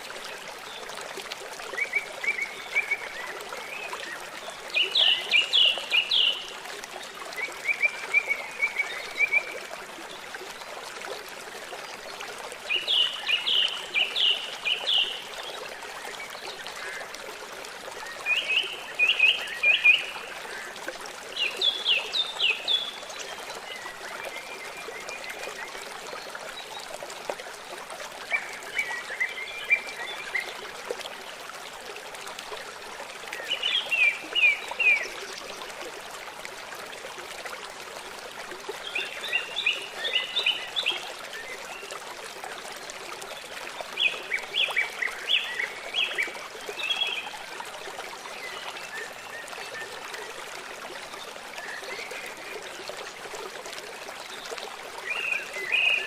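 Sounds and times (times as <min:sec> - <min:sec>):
trickling running water: 0:00.0 - 0:56.0
songbird singing: 0:04.7 - 0:06.6.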